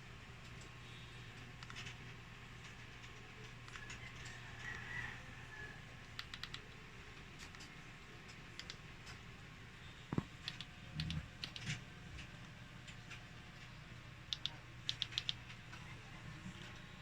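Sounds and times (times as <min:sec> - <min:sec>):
faint steady hum: 0:00.0 - 0:17.0
buttons clicking: 0:06.2 - 0:06.6, 0:08.6 - 0:08.8, 0:10.1 - 0:11.7, 0:14.3 - 0:15.4.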